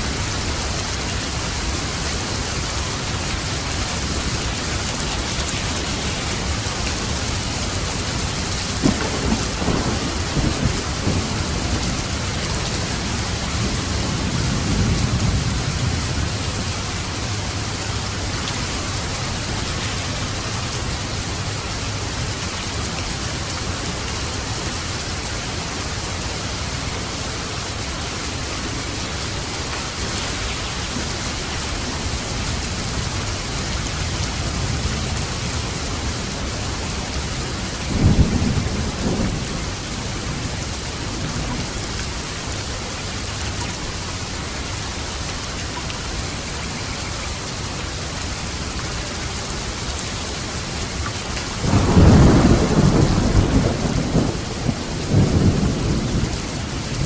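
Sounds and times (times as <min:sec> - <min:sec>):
heavy rain: 0:00.0 - 0:57.0
thunder cracking and rumbling: 0:04.0 - 0:20.8, 0:29.6 - 0:42.0, 0:51.5 - 0:57.0.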